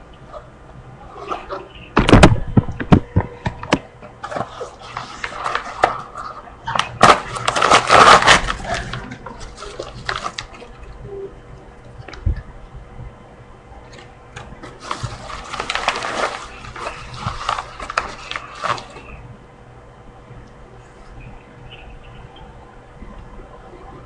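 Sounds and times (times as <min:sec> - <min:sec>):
package rustling: 0:04.2 - 0:11.0, 0:13.9 - 0:19.2.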